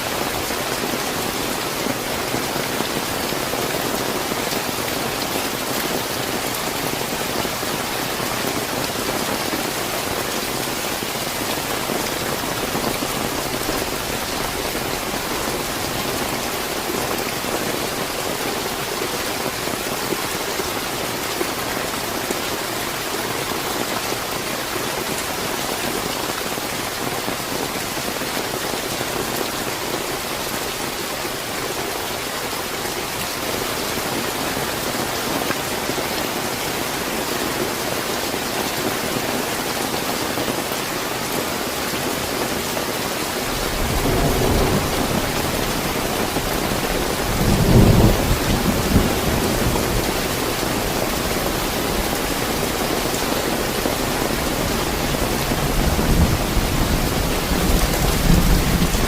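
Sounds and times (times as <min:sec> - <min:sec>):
heavy rain hissing: 0:00.0 - 0:59.0
rumble of thunder: 0:43.6 - 0:51.3, 0:55.5 - 0:59.0.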